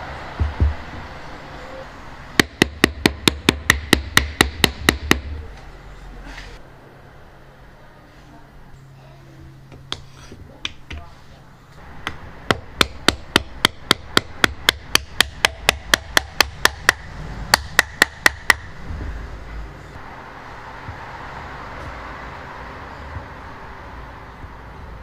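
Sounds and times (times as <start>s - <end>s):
rapid hammering: 2.4s - 5.3s, 12.0s - 18.7s.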